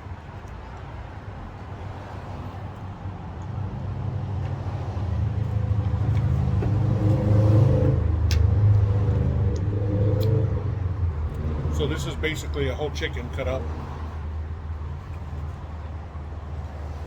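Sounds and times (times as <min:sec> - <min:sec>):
vehicle engine rumbling: 0:00.0 - 0:17.0.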